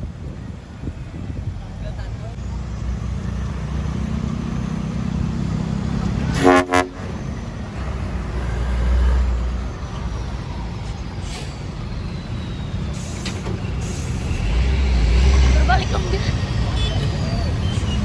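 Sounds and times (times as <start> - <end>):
low rumble of traffic: 0.0 - 18.0
vehicle horn toots: 6.3 - 7.2.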